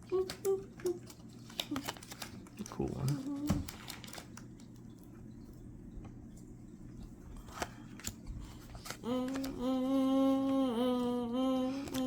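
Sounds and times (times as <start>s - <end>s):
person humming: 0.0s - 1.1s, 3.1s - 3.7s, 9.0s - 12.0s
trading cards rustling: 0.8s - 4.7s.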